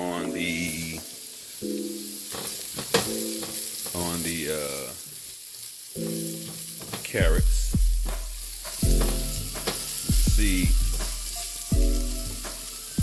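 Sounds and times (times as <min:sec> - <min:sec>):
vegetables sizzling in a skillet: 0:00.0 - 0:13.0
utensil clacking against pan: 0:02.2 - 0:04.0, 0:06.3 - 0:07.2, 0:08.0 - 0:11.3.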